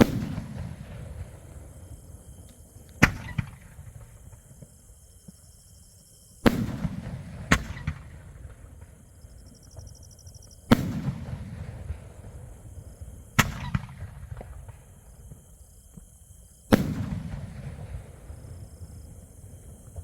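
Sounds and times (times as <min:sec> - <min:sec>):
fireworks bangs with rumbling tail: 0:00.0 - 0:02.3, 0:03.0 - 0:05.4, 0:06.4 - 0:20.0
small firework crack: 0:00.0 - 0:05.4, 0:06.4 - 0:09.1, 0:10.6 - 0:12.6, 0:13.3 - 0:16.1, 0:16.7 - 0:18.9.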